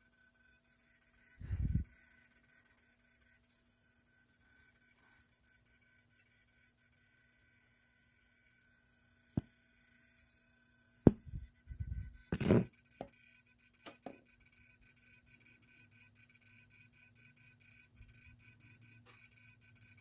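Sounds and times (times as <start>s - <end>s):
sharp knock: 11.1s - 11.4s.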